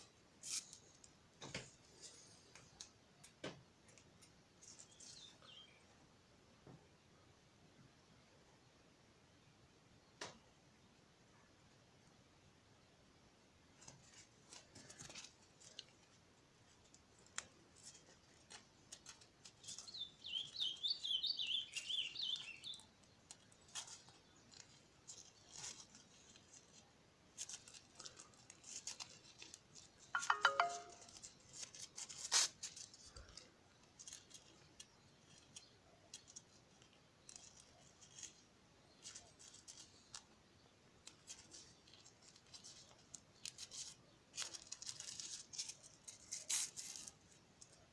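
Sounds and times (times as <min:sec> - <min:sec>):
small clicks and handling noise: 0:00.4 - 0:05.2, 0:13.8 - 0:20.0, 0:22.6 - 0:40.4, 0:41.0 - 0:47.9.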